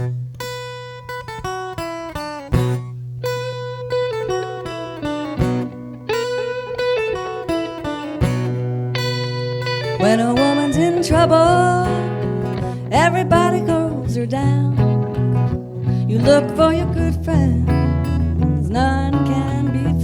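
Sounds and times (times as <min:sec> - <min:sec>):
blues guitar picking: 0:00.0 - 0:20.0
person singing: 0:09.8 - 0:15.2, 0:15.9 - 0:20.0.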